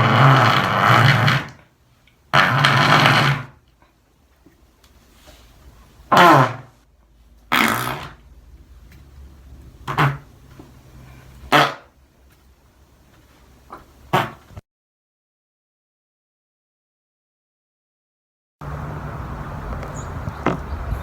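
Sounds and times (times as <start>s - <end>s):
fart sound effects: 0.0s - 1.6s, 2.3s - 3.6s, 6.1s - 6.7s, 7.5s - 8.2s, 9.8s - 10.4s, 11.5s - 12.0s, 14.1s - 14.6s.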